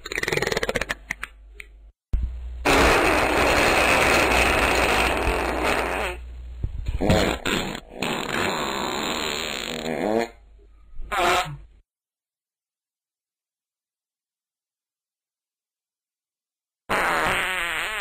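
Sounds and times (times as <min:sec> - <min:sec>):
farting sounds: 0:00.0 - 0:01.2, 0:02.6 - 0:06.2, 0:06.9 - 0:10.4, 0:11.1 - 0:11.7, 0:16.9 - 0:18.0.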